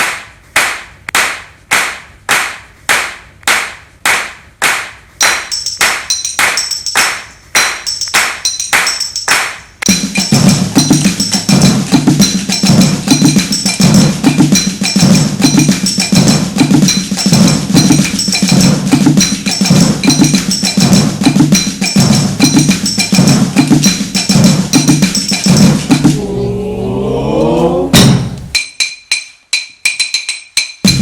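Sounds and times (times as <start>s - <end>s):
low thudding percussion hits: 9.9s - 26.3s, 27.9s - 28.6s.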